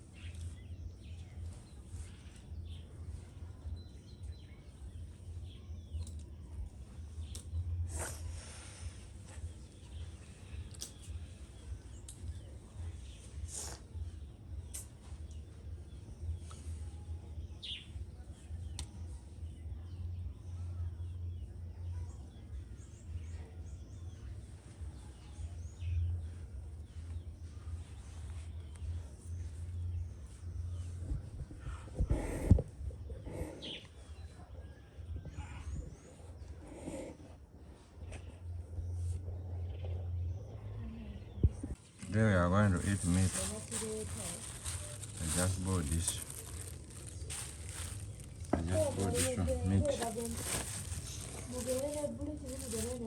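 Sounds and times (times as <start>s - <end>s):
faint bird chirps: 0.0s - 42.0s
low uneven rumble: 0.0s - 53.0s
low rumble: 42.7s - 53.0s.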